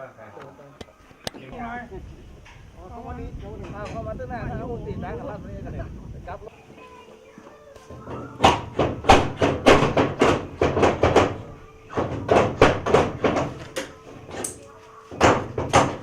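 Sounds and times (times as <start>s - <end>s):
rapid sharp knocks: 8.4s - 13.9s, 15.2s - 16.0s.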